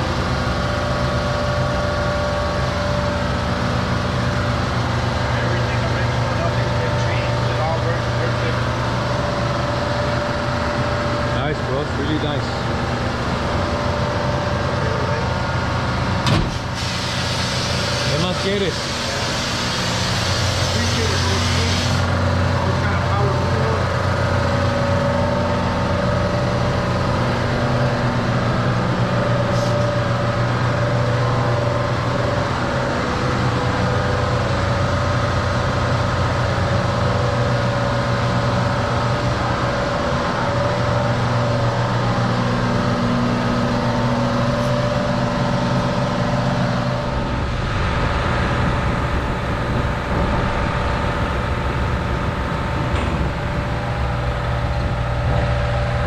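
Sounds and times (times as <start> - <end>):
vehicle engine running: 20.8 - 56.0.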